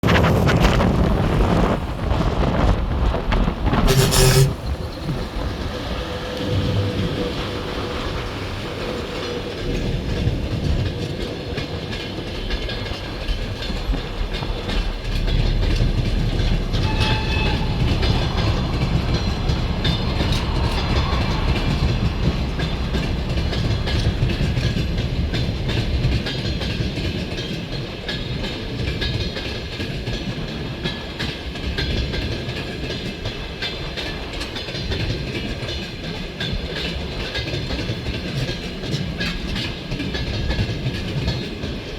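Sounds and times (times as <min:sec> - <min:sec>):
freight train rumbling past: 0:00.2 - 0:41.9
brief high tone: 0:03.8 - 0:04.6.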